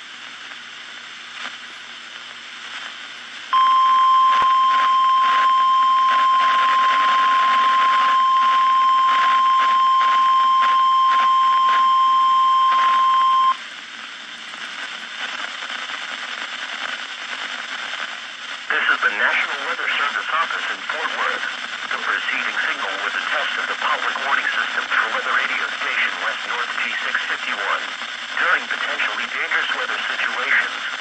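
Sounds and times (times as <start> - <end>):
radio static hiss and crackle: 0.0 - 31.0
steady high alarm tone: 3.6 - 13.6.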